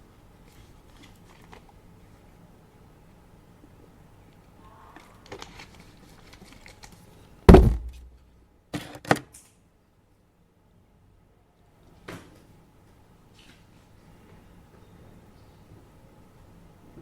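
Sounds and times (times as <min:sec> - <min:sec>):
loud thunk: 0:07.5 - 0:08.2.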